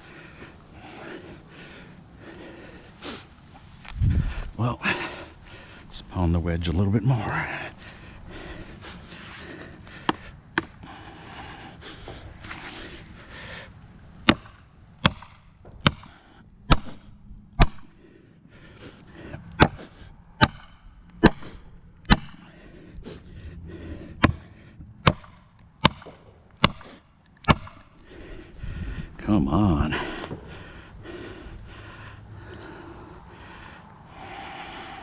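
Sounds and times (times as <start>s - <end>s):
hammer striking metal wedge: 10.1s - 10.8s, 14.2s - 18.0s, 19.6s - 22.5s, 24.2s - 28.0s.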